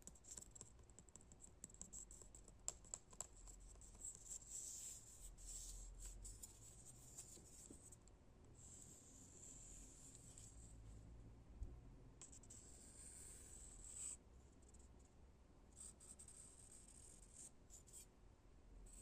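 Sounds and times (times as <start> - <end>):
soft scratching on wood: 3.2 - 8.0, 8.6 - 10.9.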